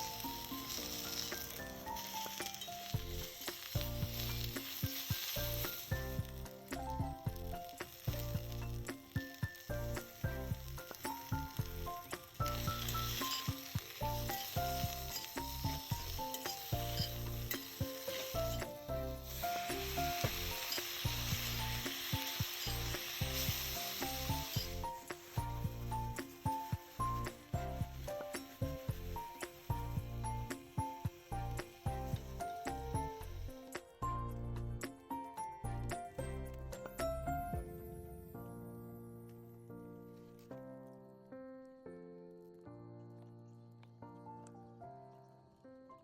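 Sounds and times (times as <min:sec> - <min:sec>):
food sizzling in a pan: 0:00.0 - 0:34.2
background music with bass line: 0:03.0 - 0:22.0, 0:22.7 - 0:30.7, 0:31.3 - 0:37.6.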